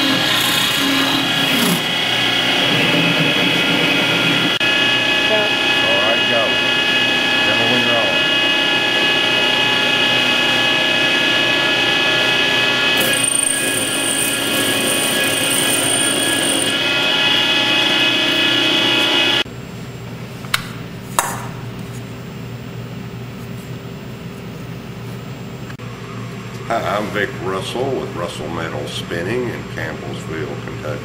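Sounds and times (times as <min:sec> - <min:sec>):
metal spinning lathe whine: 0:00.0 - 0:19.5.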